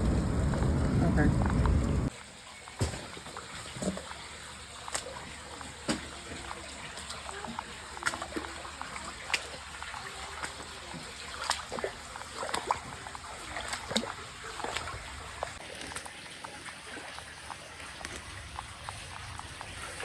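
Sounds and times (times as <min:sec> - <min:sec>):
light water splashes: 0:00.0 - 0:20.0
water trickling and dripping: 0:00.0 - 0:20.0.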